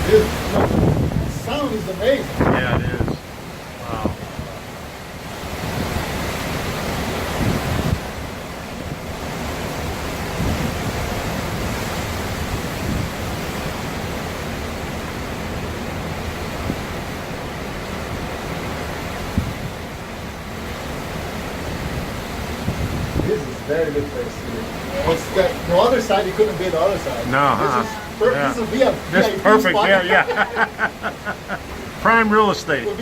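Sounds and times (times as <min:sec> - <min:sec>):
strong wind blowing: 0:00.0 - 0:03.2, 0:03.8 - 0:04.6, 0:07.2 - 0:08.2, 0:10.3 - 0:13.5, 0:19.3 - 0:19.9, 0:21.8 - 0:25.7
wind buffeting microphone: 0:00.0 - 0:03.3, 0:05.6 - 0:09.3, 0:10.0 - 0:13.6, 0:19.2 - 0:20.1, 0:21.7 - 0:25.6.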